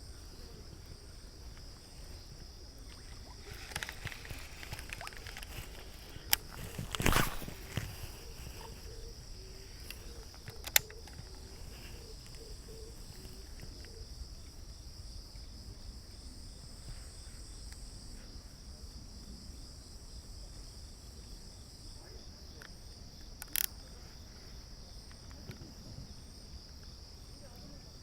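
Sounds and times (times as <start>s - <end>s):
high-pitched insect chorus: 0.0s - 28.0s
sharp click: 23.4s - 23.7s.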